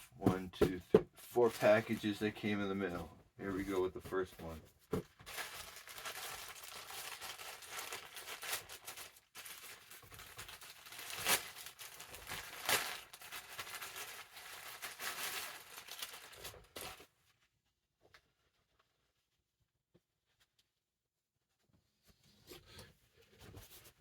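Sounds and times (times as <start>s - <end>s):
packaging crinkling and rustling: 5.0s - 17.2s
packaging tearing: 5.3s - 16.9s.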